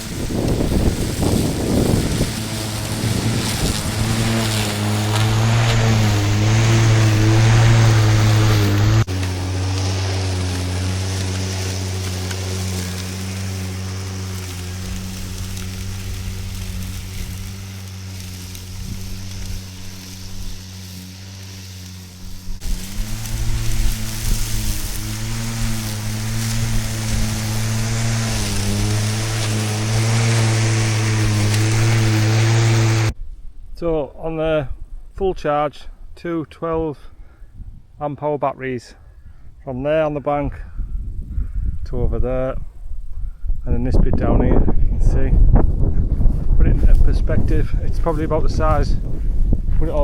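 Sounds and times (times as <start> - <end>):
electric lawn mower humming: 0.0 - 33.2.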